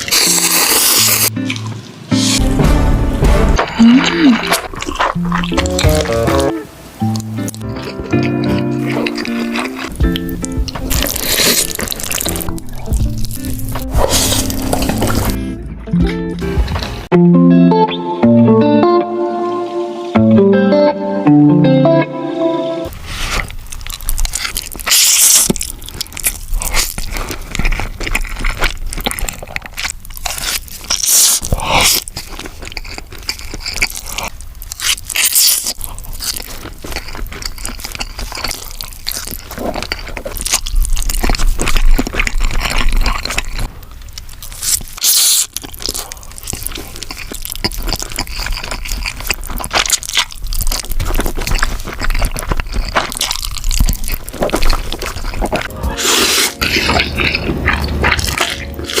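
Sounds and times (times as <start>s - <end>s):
person crunching and chewing: 0.0s - 2.5s, 3.4s - 15.5s, 22.9s - 59.0s.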